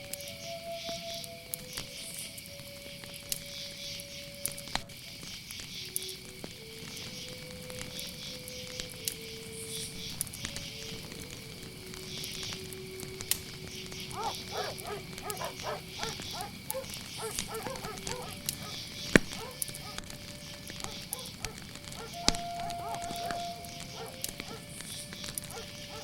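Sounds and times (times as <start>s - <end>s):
crickets chirring: 0.0s - 26.0s
wood fire crackling: 0.0s - 26.0s
short animal calls: 14.1s - 20.0s
fire pop: 16.0s - 25.5s.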